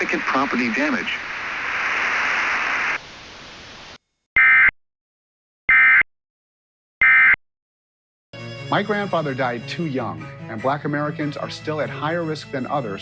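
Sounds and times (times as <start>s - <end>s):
radio static hiss: 0.0s - 4.0s.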